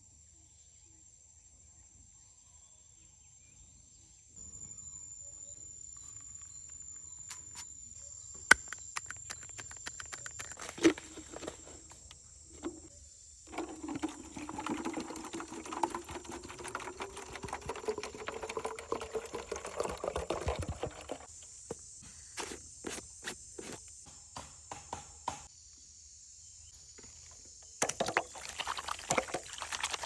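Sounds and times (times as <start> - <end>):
insects shrilling: 8.4 - 10.8
water poured into container: 13.5 - 21.3, 27.8 - 30.0.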